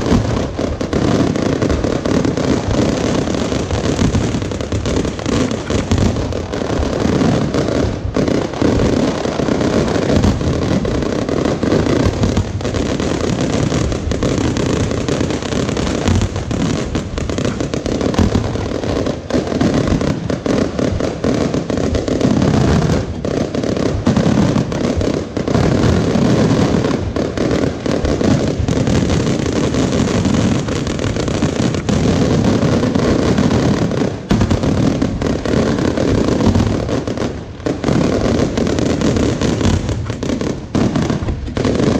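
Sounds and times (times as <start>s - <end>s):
fireworks banging and crackling: 0.0s - 41.9s.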